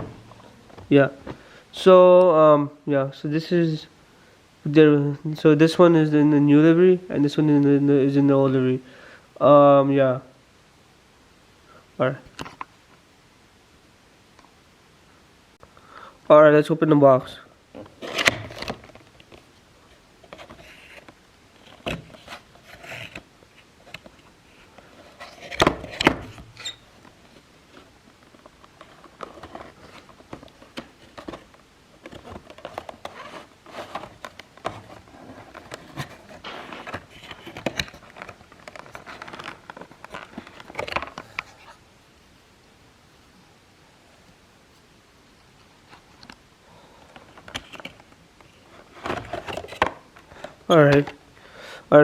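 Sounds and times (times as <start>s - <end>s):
packaging rustling: 17.8s - 19.5s, 20.2s - 41.8s.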